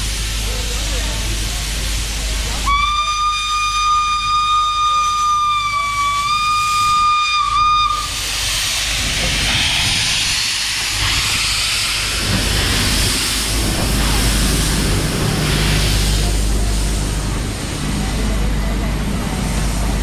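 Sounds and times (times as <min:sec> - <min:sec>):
steam hissing: 0:00.0 - 0:20.0
steam locomotive whistle: 0:02.6 - 0:08.2
low rumble: 0:08.5 - 0:20.0.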